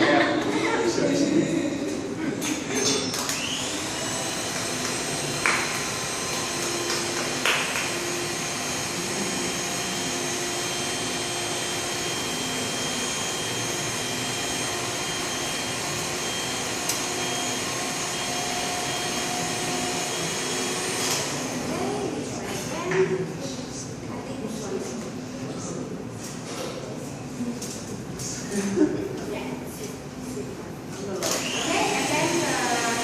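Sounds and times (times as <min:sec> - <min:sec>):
electric mixer running: 0:03.1 - 0:22.7, 0:31.2 - 0:33.0.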